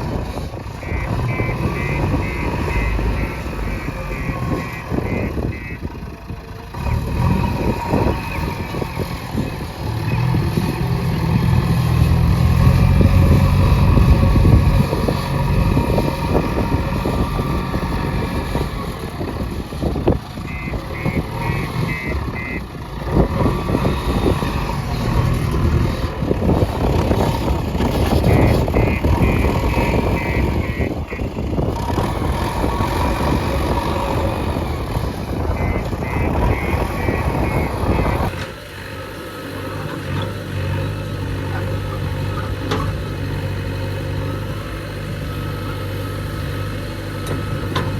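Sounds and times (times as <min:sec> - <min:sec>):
diesel engine running: 0:00.0 - 0:47.9
reversing alarm beeps: 0:00.8 - 0:05.9, 0:20.5 - 0:22.7, 0:28.3 - 0:31.3, 0:35.6 - 0:38.3.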